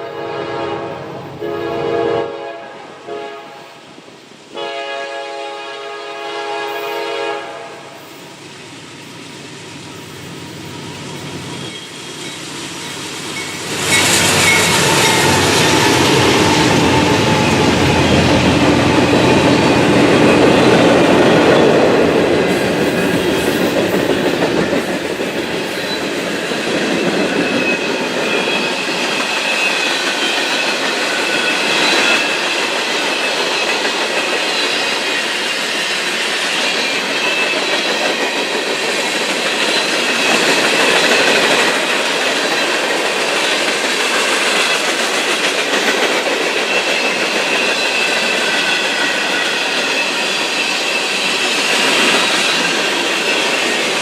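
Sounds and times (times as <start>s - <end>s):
train horn blasts: 0.0s - 3.8s, 4.5s - 8.1s
train rolling past: 0.0s - 54.0s
wheels clacking over rails: 36.6s - 54.0s.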